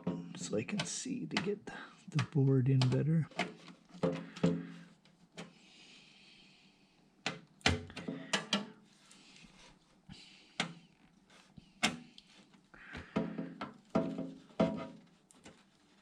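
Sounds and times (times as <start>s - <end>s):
hardware clicks and knocks: 0.0s - 4.8s, 7.3s - 8.8s.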